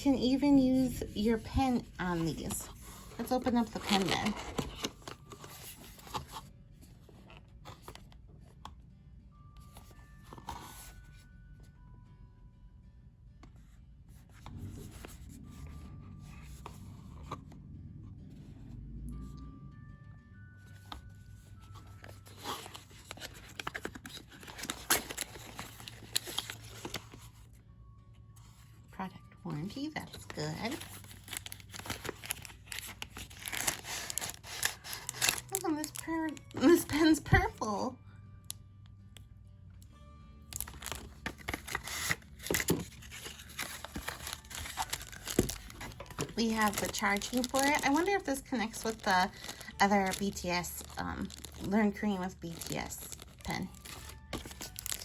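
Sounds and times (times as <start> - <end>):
packaging rustling and crinkling: 1.8 - 6.5, 21.6 - 27.5, 30.1 - 37.1, 40.5 - 55.0.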